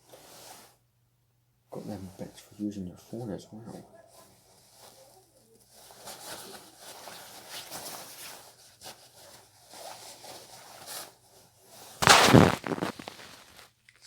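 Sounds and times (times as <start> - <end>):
clothing rustling against microphone: 4.2 - 13.7.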